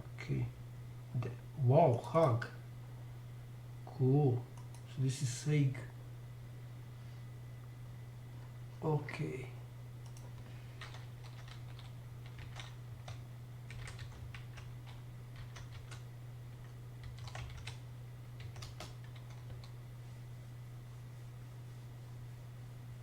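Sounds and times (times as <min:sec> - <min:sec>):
steady low hum: 0:00.0 - 0:23.0
typing on computer keyboard: 0:10.1 - 0:16.0, 0:16.6 - 0:17.8, 0:18.4 - 0:19.7.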